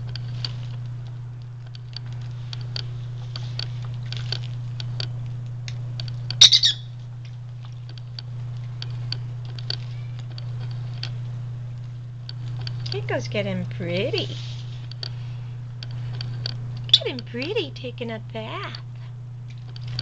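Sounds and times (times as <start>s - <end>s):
steady low hum: 0.0s - 20.0s
parrot squawking: 6.4s - 6.9s
small clicks: 19.5s - 20.0s.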